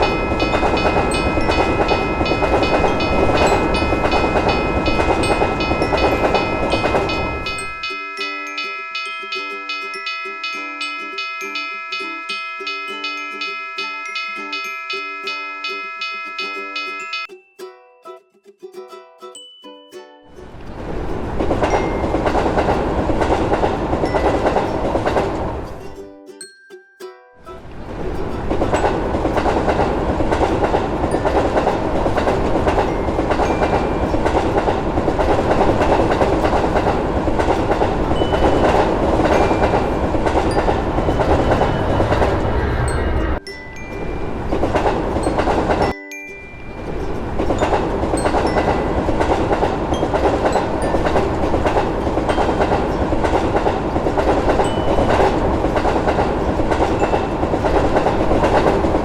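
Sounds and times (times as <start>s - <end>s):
train wheels clattering over rails: 0.0s - 7.8s, 20.7s - 25.7s, 27.8s - 43.4s, 47.2s - 59.0s.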